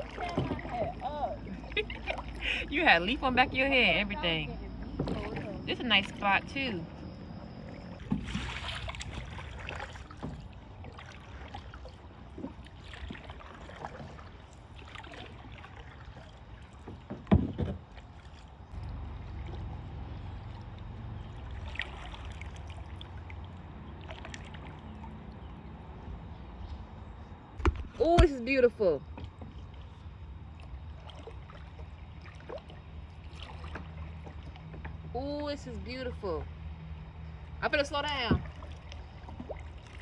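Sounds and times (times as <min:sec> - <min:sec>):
paddle splashing in water: 0:00.0 - 0:40.0.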